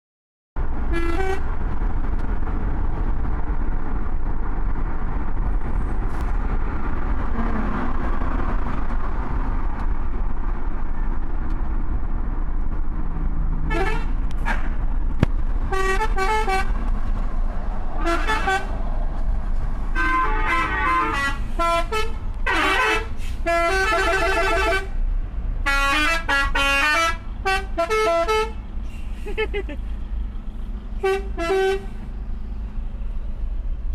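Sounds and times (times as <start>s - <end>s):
road and wind rumble: 0.6s - 33.9s
multi-tone musical vehicle horns: 0.9s - 1.5s, 13.7s - 14.8s, 15.7s - 16.8s, 18.0s - 18.8s, 19.9s - 25.0s, 25.6s - 28.8s, 31.0s - 32.0s.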